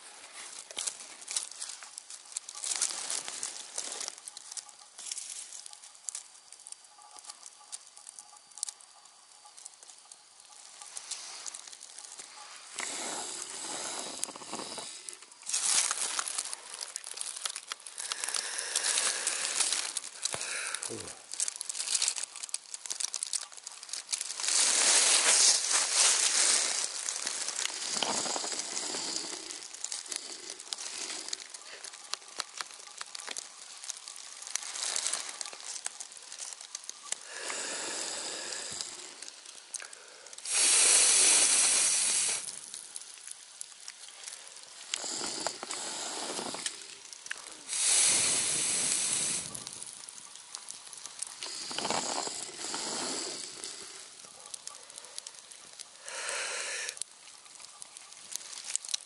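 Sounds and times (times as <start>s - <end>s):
campfire crackling and popping: 0.0s - 59.0s
hissing surges: 10.7s - 21.2s, 40.4s - 42.7s, 44.8s - 49.8s, 51.2s - 54.2s.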